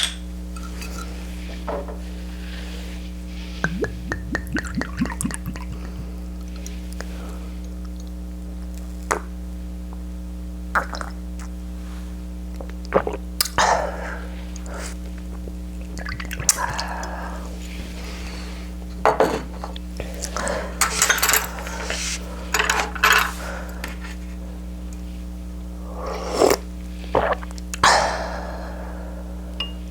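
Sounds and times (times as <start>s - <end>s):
dishes and cutlery clinking: 19.1s - 19.8s, 20.8s - 23.4s.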